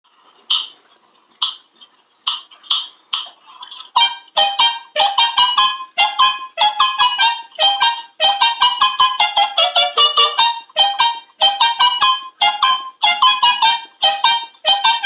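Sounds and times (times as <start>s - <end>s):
sharp taps: 1.4s - 1.7s, 2.3s - 3.4s
trumpet playing short high notes: 4.0s - 15.0s.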